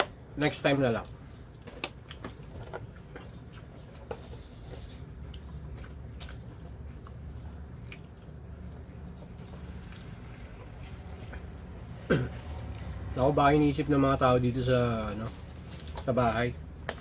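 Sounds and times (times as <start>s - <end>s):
low background hum: 0.0s - 17.0s
soft chewing: 0.8s - 13.2s.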